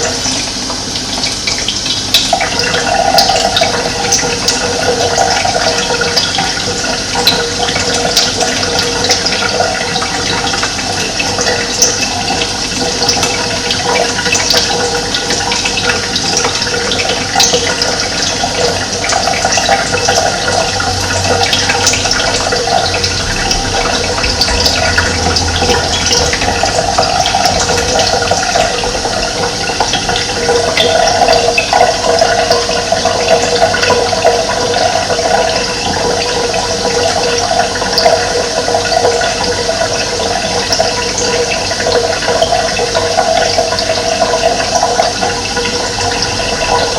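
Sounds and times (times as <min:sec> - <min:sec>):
running water splashing: 0:00.0 - 0:46.9.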